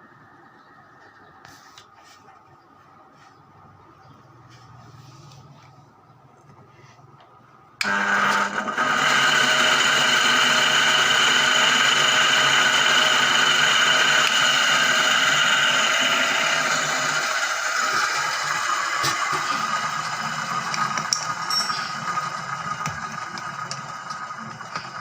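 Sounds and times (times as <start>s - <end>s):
washing machine motor whining: 7.8s - 25.0s.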